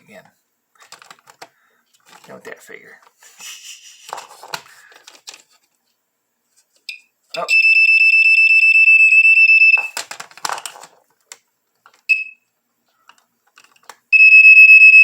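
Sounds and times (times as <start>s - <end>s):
smoke detector alarm pulsing: 7.5s - 10.0s, 14.1s - 15.0s.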